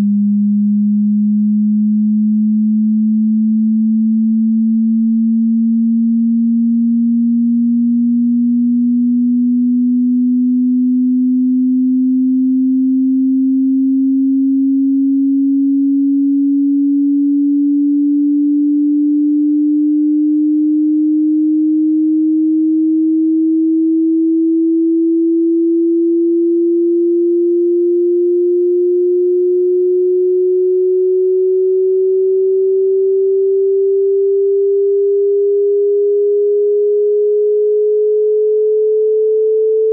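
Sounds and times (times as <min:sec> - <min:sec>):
sine tone sweeping upward: 0:00.0 - 0:39.9.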